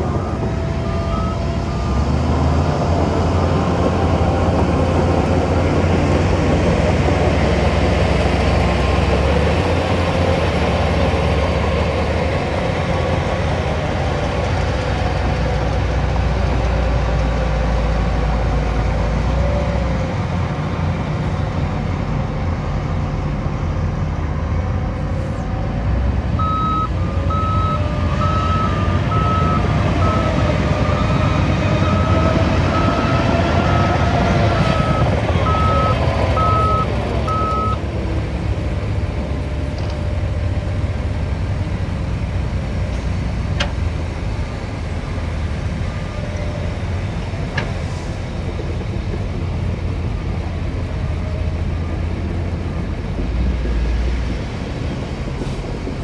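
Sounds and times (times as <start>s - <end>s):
heavy diesel machinery running: 0.0s - 56.0s
reversing alarm beeping: 26.4s - 37.8s.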